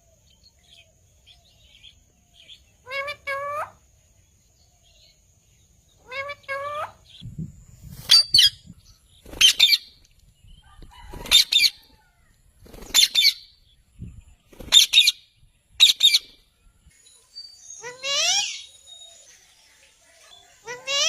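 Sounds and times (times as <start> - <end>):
parakeet screeching: 2.9 - 3.8, 17.8 - 18.7, 20.7 - 21.0.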